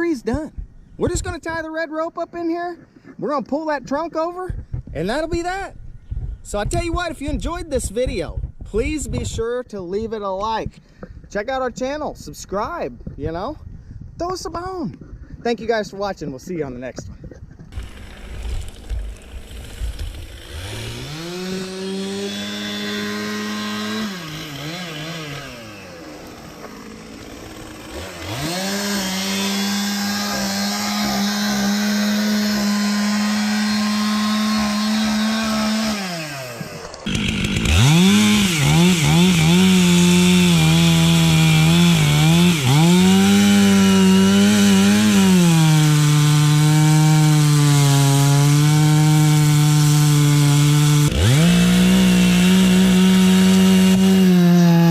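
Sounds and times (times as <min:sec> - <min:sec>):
chainsaw revving and cutting wood: 0:17.7 - 0:54.9.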